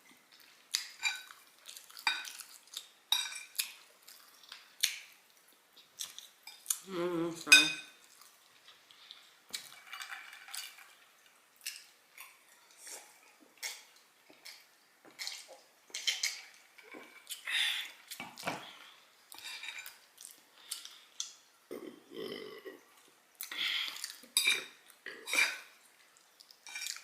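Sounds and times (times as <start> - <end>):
cutlery scraping a plate: 19.3 - 20.0, 24.4 - 25.8.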